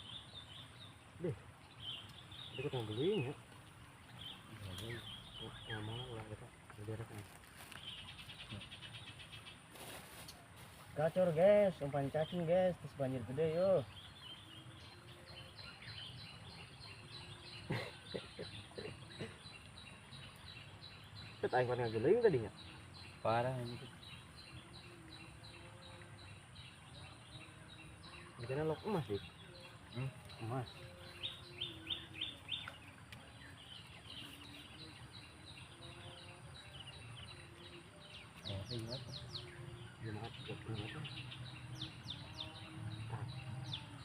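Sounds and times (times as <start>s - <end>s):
outdoor background hiss: 0.0s - 44.0s
bird chirps: 13.1s - 44.0s.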